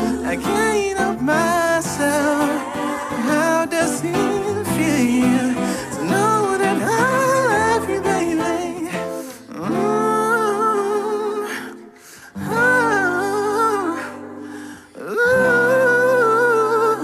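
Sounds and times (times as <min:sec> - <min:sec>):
instrumental backing music: 0:00.0 - 0:10.4.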